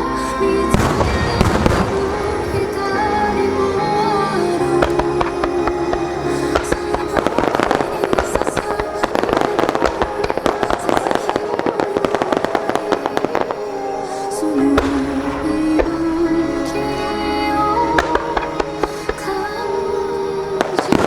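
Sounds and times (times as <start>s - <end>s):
music: 0.0s - 21.0s
firework bursts and crackles: 0.7s - 17.0s, 20.6s - 21.0s.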